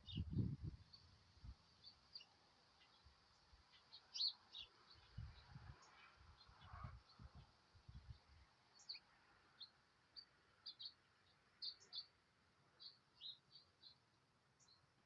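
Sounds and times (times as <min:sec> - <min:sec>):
songbirds chirping: 0:00.0 - 0:15.0.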